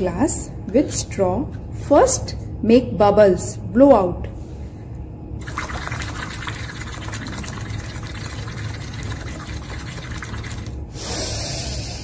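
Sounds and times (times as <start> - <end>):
bubbling through a straw in water: 5.4 - 10.9.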